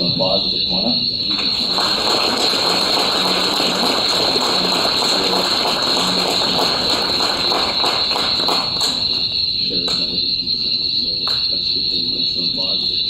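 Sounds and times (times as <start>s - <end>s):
high-pitched whine: 0.0s - 13.0s
audience applause: 1.2s - 10.3s, 11.2s - 11.5s.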